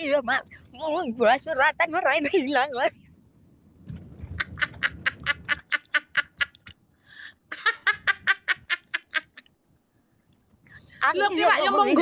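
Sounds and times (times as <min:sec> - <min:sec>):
person laughing: 0:04.4 - 0:06.8, 0:07.5 - 0:09.5.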